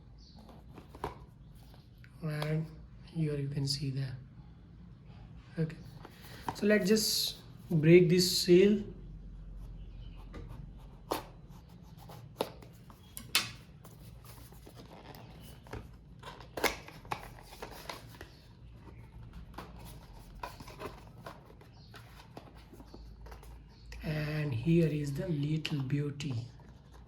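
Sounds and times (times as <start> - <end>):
paper and packaging rustling: 12.1 - 23.8.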